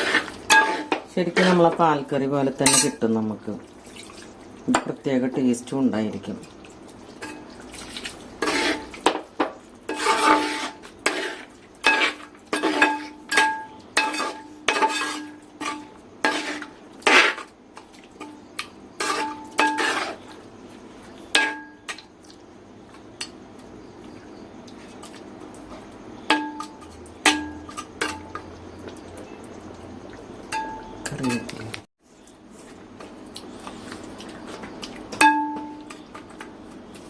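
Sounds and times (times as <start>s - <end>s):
metal spoon scraping a pot: 0.0s - 1.8s, 8.4s - 8.9s, 9.9s - 17.5s, 19.0s - 20.4s.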